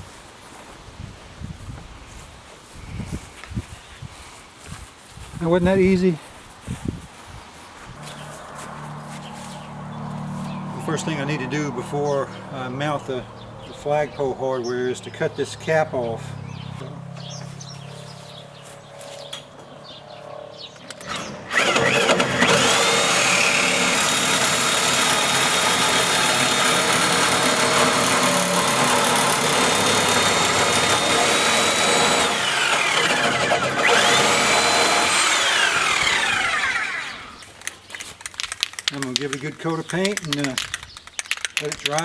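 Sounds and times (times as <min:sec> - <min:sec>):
power tool whining: 0:08.0 - 0:14.2, 0:20.8 - 0:37.8.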